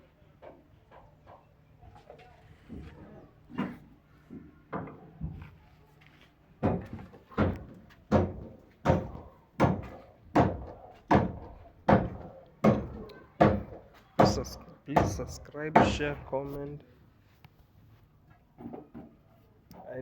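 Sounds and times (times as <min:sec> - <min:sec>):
hammer blows ringing: 0:08.2 - 0:16.3.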